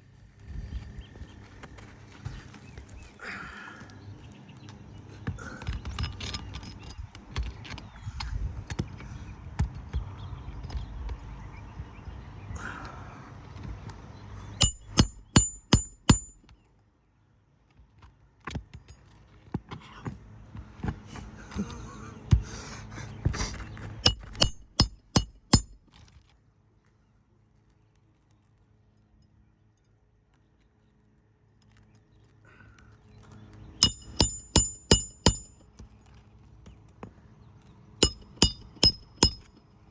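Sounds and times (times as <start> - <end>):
hammer blows on metal: 14.6 - 16.4, 24.0 - 25.8, 33.8 - 35.6, 38.0 - 39.5.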